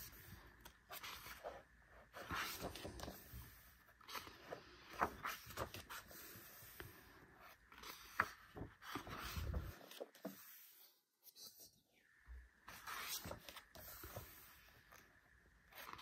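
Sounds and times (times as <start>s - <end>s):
cardboard and paper rustling: 0.1s - 10.6s.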